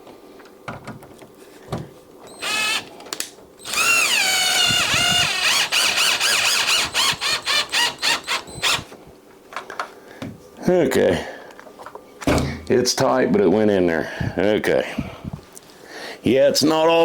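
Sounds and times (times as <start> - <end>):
power drill whining: 2.3 - 2.9, 3.6 - 8.9.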